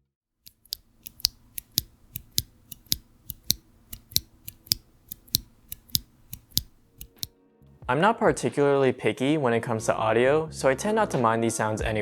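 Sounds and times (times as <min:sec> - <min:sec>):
metallic switch noises: 0:00.5 - 0:07.3
switch clicking: 0:00.5 - 0:07.3.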